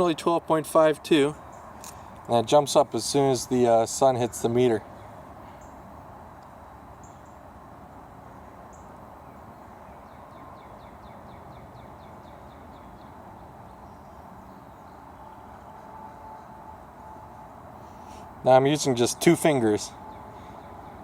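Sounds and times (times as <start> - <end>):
outdoor background noise: 0.0 - 21.0.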